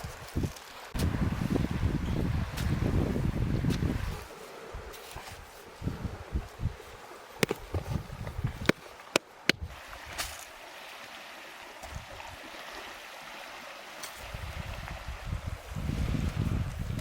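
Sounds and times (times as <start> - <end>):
river water running: 0.0 - 17.0
sharp clicks or knocks: 7.4 - 9.6.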